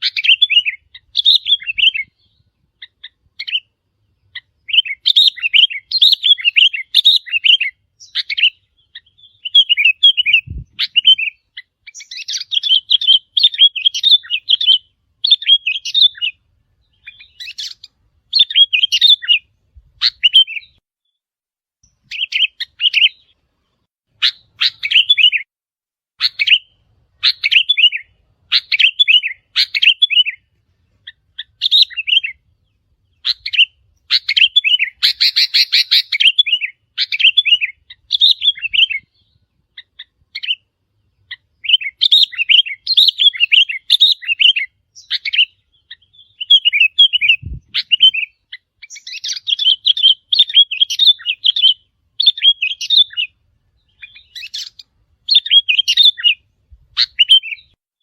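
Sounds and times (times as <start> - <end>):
bulbul chirping calls: 0.0 - 20.8, 21.8 - 23.4, 24.2 - 25.5, 26.2 - 57.8.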